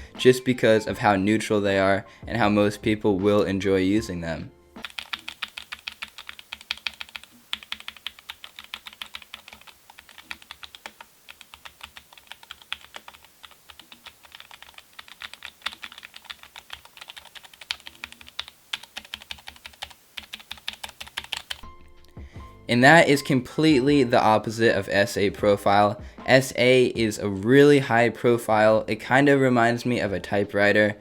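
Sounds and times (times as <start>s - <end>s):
mechanical keyboard typing: 4.8s - 21.6s.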